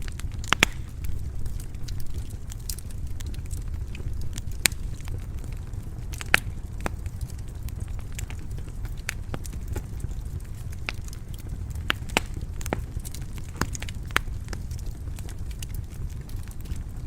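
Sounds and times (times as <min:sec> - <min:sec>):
low rumble of flames: 0:00.0 - 0:17.0
wood fire popping and snapping: 0:00.0 - 0:17.0.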